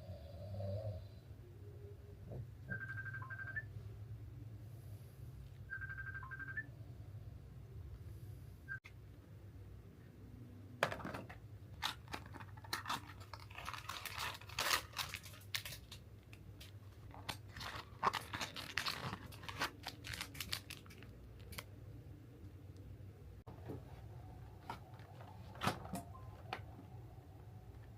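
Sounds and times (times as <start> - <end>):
packaging ripping and crinkling: 11.8 - 21.7.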